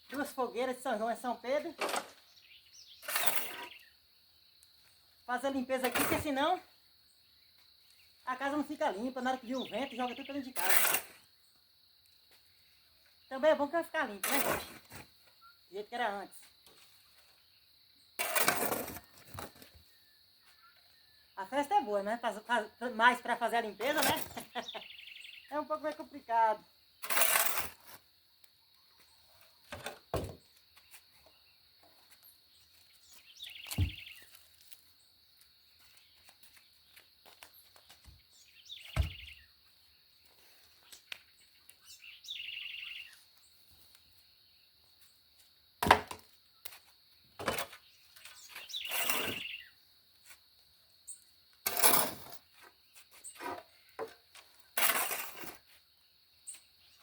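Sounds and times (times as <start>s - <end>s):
birds chirping: 2.2s - 5.0s, 7.1s - 11.6s, 23.0s - 26.2s, 30.4s - 34.4s, 37.6s - 43.6s, 47.6s - 49.8s
shovel scraping ash: 3.0s - 3.8s, 10.6s - 11.3s, 14.2s - 15.0s, 18.2s - 19.4s, 23.9s - 24.5s, 27.0s - 28.0s, 48.4s - 49.5s, 51.6s - 52.4s, 54.8s - 55.7s.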